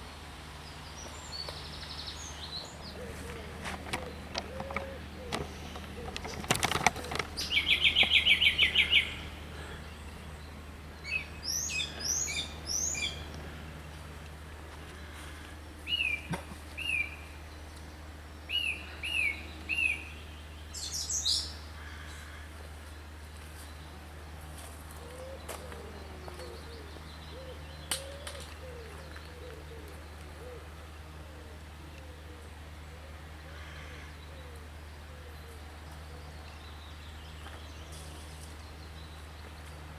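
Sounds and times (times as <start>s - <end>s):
songbird trill: 0.6s - 14.4s, 15.0s - 39.9s
pigeon cooing: 2.8s - 9.7s, 25.0s - 35.6s.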